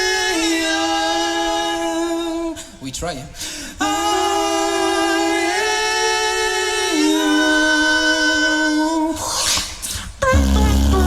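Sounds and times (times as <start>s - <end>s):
breathy hiss: 3.3s - 3.9s.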